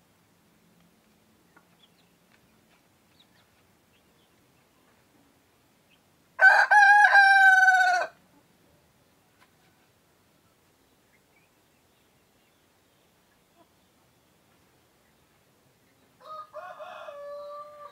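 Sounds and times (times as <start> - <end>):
cockerel crowing: 6.4 - 8.2, 16.2 - 17.9.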